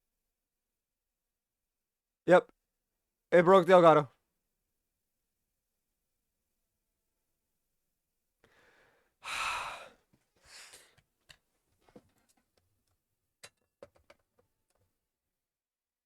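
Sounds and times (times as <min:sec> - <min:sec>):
person sighing: 0:08.5 - 0:11.0.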